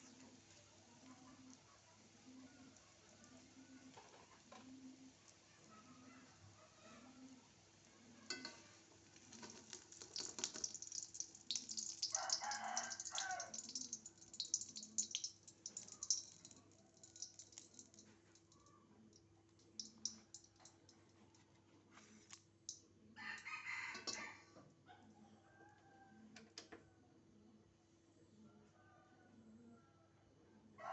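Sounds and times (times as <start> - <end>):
fast crackling clicks: 9.2 - 18.6, 19.2 - 21.0
rooster crowing: 12.1 - 13.5, 23.2 - 24.6.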